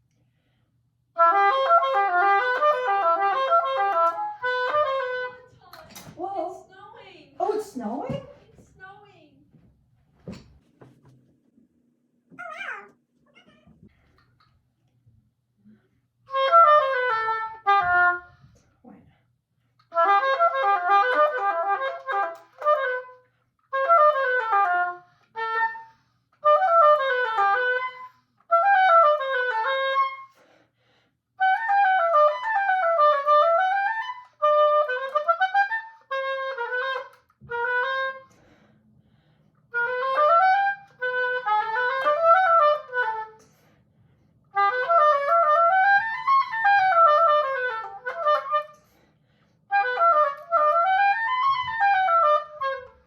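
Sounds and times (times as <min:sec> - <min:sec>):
oboe playing quick runs: 0:01.2 - 0:05.8, 0:16.3 - 0:18.6, 0:19.9 - 0:30.4, 0:31.4 - 0:38.6, 0:39.7 - 0:43.4, 0:44.6 - 0:48.8, 0:49.7 - 0:53.0.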